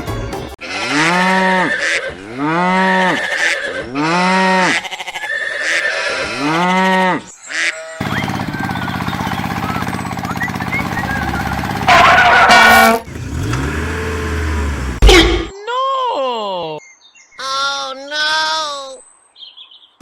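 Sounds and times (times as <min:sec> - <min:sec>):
cow mooing: 0:00.6 - 0:04.9, 0:05.6 - 0:07.3.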